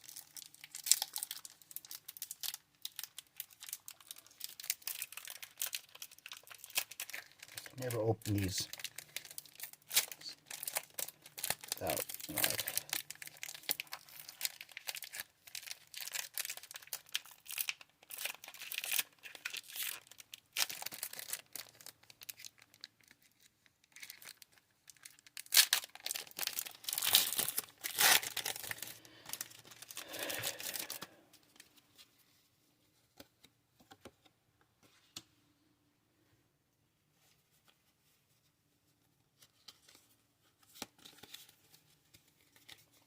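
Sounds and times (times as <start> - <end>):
foil wrappers crinkling and tearing: 0.0 - 31.7.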